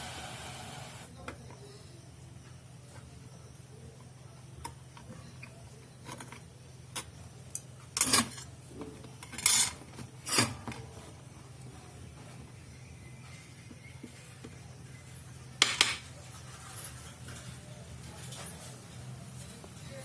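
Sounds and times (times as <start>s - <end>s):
tools clattering and scraping: 7.9s - 11.2s.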